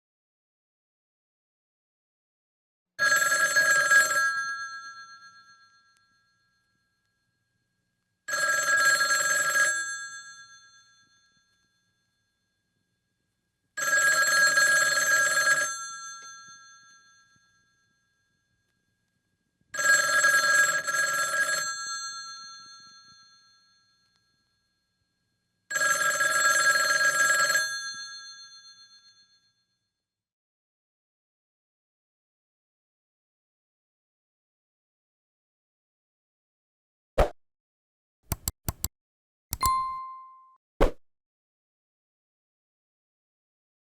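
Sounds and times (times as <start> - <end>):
telephone bell ringing: 3.0 - 6.8, 8.3 - 11.7, 13.8 - 17.8, 19.8 - 24.6, 25.7 - 29.8.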